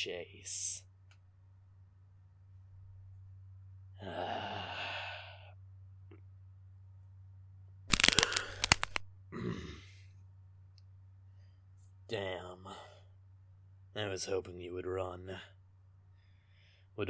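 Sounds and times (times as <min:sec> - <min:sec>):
steady low hum: 0:00.0 - 0:17.0
breathy exhale: 0:04.0 - 0:05.5
loud sharp cracks: 0:07.9 - 0:09.0
short low vocal sound: 0:09.3 - 0:09.9.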